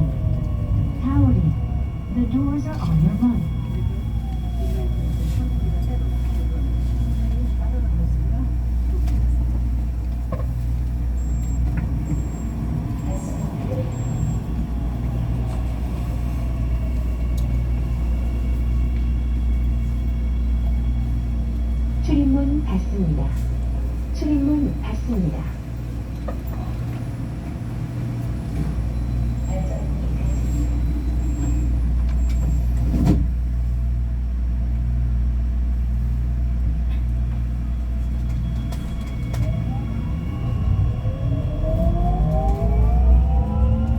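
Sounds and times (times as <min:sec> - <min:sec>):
train rumbling: 0:00.0 - 0:43.9.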